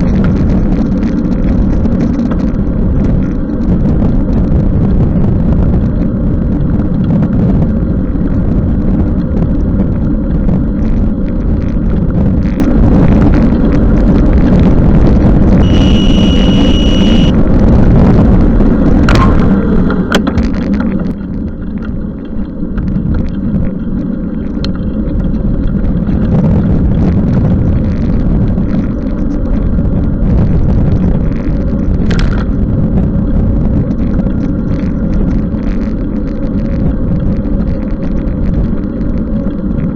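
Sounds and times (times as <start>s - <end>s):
wind and road noise: 0.0s - 39.9s
high beep: 15.6s - 17.3s.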